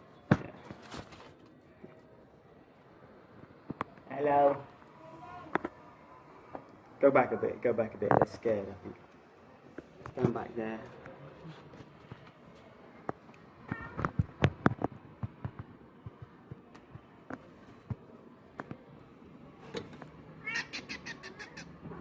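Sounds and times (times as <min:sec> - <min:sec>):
cat meowing: 0:13.6 - 0:14.1, 0:20.4 - 0:22.0.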